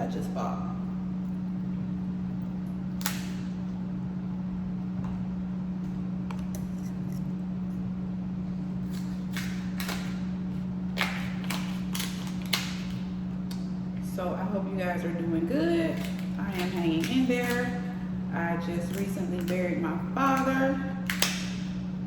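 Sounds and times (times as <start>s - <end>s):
steady low hum: 0.0s - 22.0s
crab shell cracking: 1.2s - 3.8s, 8.8s - 13.7s, 15.9s - 21.8s.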